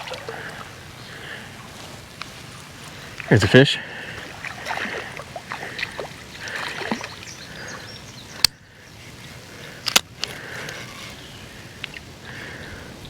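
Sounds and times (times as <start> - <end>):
water splashing and sloshing: 0.0 - 8.5.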